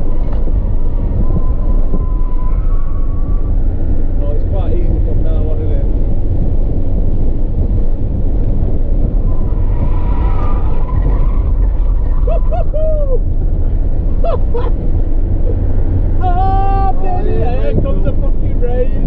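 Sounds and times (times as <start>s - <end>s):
car driving rumble: 0.0s - 19.0s.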